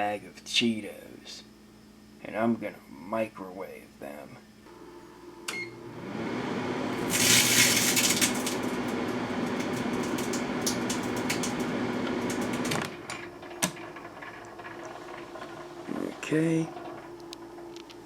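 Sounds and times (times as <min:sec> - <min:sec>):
microwave oven humming: 0:04.1 - 0:18.0
microwave click: 0:05.4 - 0:13.8.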